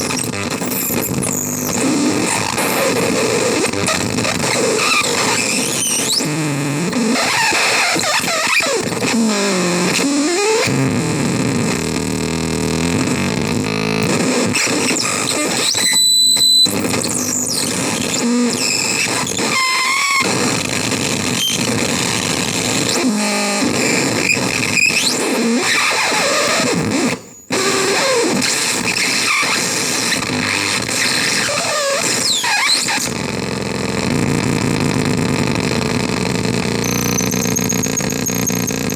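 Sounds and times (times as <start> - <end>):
distorted harsh noise synth: 0.0 - 24.7, 32.9 - 38.9
steady high whistle: 36.8 - 38.9.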